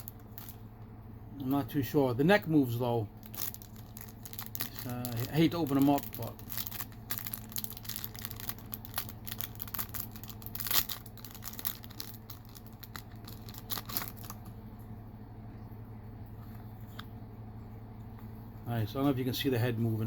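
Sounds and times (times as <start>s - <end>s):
packaging crinkling and tearing: 0.0s - 0.6s, 3.2s - 14.5s
low hum: 0.0s - 20.0s.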